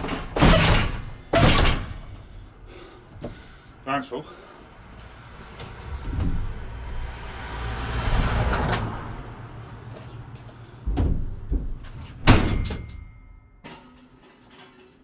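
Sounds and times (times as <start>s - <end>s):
door slamming shut: 0.0s - 2.2s, 10.9s - 13.1s.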